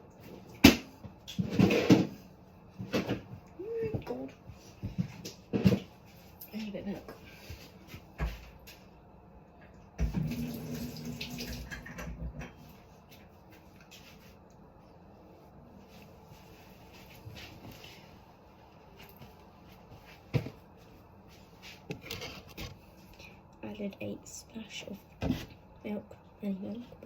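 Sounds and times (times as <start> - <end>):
milk pouring: 10.0 - 11.8.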